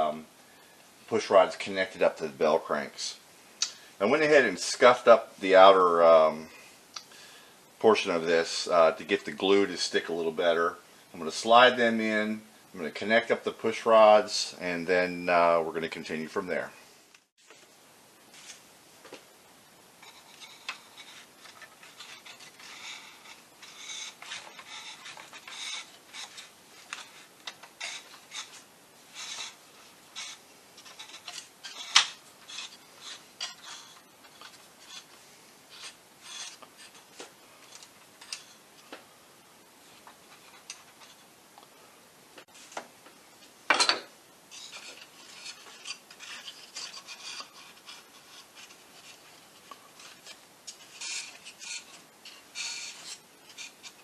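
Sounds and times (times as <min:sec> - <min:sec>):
plastic rods scraping on wing: 0:20.0 - 0:38.6, 0:44.5 - 0:54.0.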